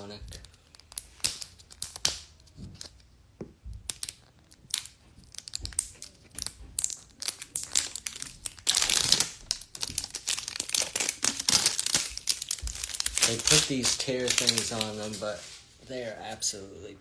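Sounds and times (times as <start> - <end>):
plastic wrapper crinkling: 3.8 - 15.8.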